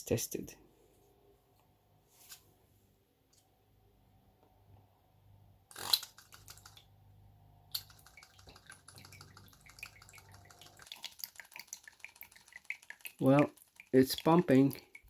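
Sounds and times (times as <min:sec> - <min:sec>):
pump clicking and water dripping: 0:05.9 - 0:06.9, 0:07.7 - 0:15.0.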